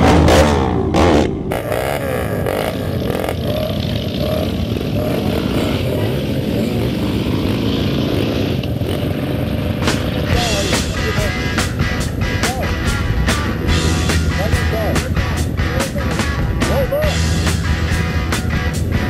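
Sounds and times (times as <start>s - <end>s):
dirt bike engine droning: 0.0s - 19.0s.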